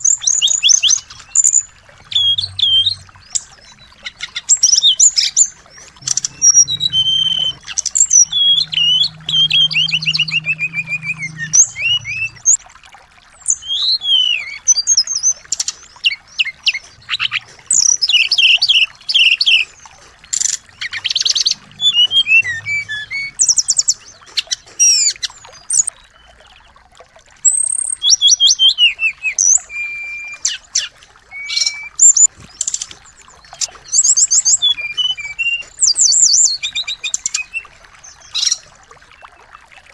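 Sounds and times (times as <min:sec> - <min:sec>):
songbirds chirping and trilling: 0:00.0 - 0:12.6, 0:13.4 - 0:39.9.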